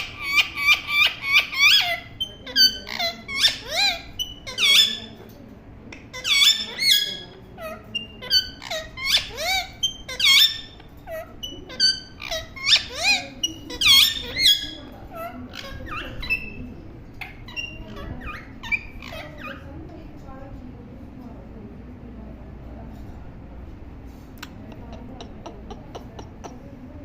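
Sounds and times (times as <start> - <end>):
parrot squawking: 0.0 - 5.2, 6.1 - 19.7.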